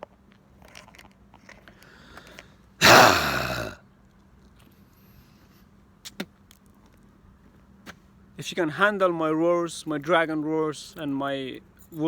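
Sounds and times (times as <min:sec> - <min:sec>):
man's harsh breathy roar: 0:02.8 - 0:03.8.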